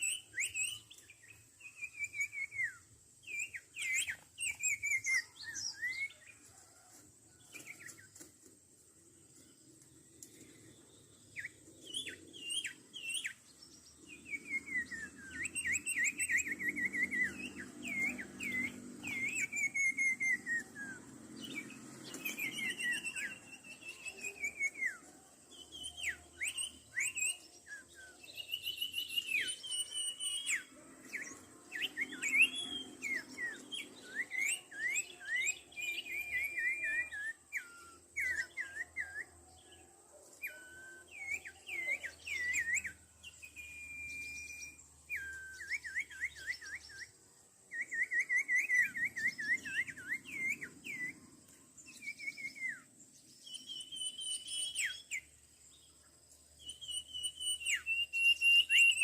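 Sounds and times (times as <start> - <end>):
bird whistling and chirping: 0.0 - 6.8, 10.2 - 59.0.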